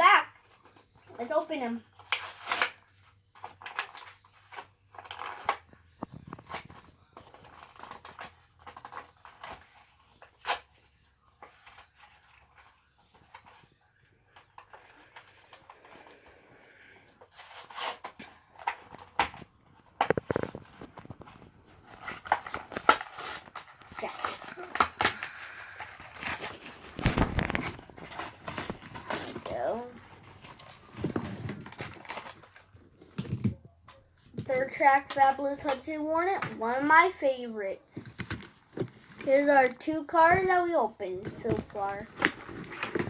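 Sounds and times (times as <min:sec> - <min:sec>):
blister packaging being opened: 0:17.2 - 0:32.8, 0:41.5 - 0:43.0.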